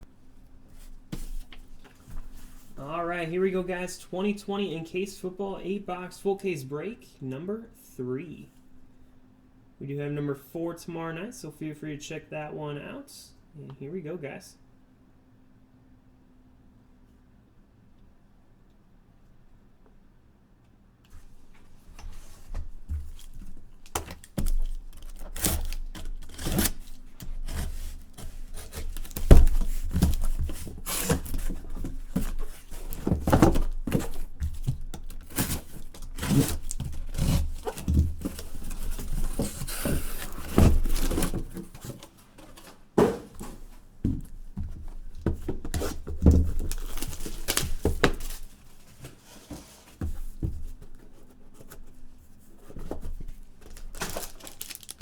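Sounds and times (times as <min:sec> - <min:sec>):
wrap and cardboard tearing: 0:23.1 - 0:42.0, 0:45.8 - 0:48.5, 0:53.6 - 0:55.0
boxes thudding on table: 0:28.4 - 0:36.8, 0:42.6 - 0:48.5.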